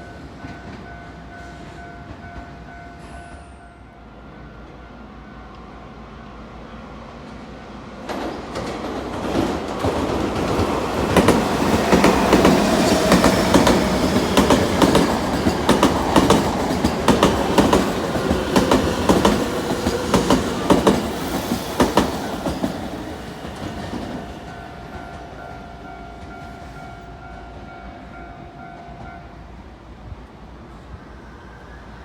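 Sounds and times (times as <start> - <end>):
train rumble: 6.5 - 27.8
train wheels clicking over rail joints: 8.1 - 25.2.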